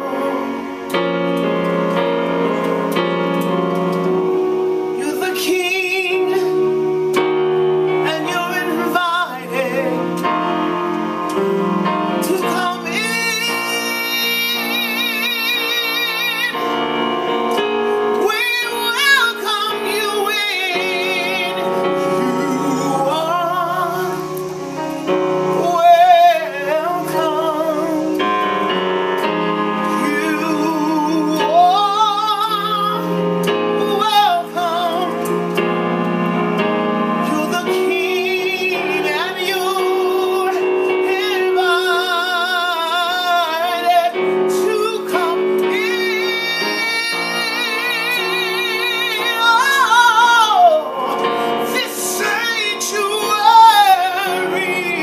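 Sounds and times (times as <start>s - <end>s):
woman singing gospel: 5.0s - 6.6s, 8.0s - 10.4s, 12.2s - 17.2s, 18.2s - 24.6s, 25.5s - 28.5s, 29.9s - 35.3s, 37.2s - 55.0s.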